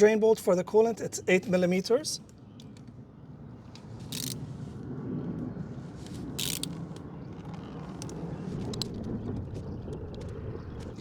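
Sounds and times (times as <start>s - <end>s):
steady low rumble: 3.0s - 11.0s.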